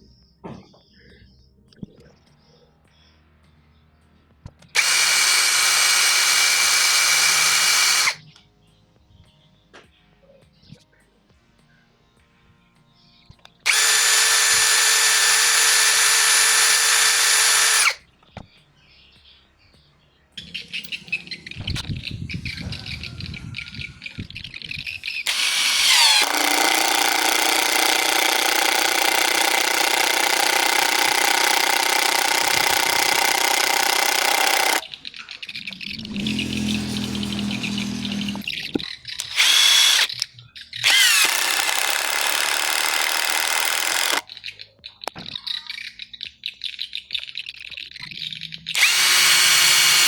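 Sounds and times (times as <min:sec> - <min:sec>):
impact driver whirring: 0:04.8 - 0:08.2, 0:13.6 - 0:18.0, 0:25.2 - 0:34.8, 0:35.6 - 0:40.2, 0:40.8 - 0:44.2, 0:48.7 - 0:50.0.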